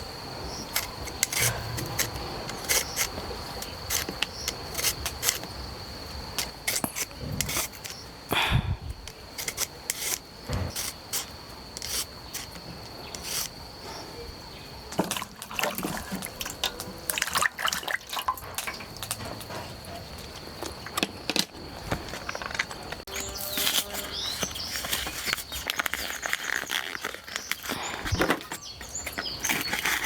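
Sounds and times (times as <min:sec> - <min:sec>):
water splashing and trickling: 0:14.9 - 0:21.0.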